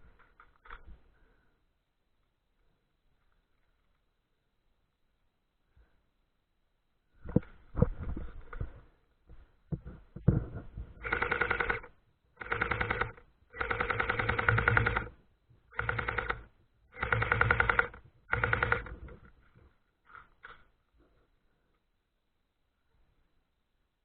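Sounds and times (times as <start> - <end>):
airsoft gun firing bursts: 11.0 - 19.1.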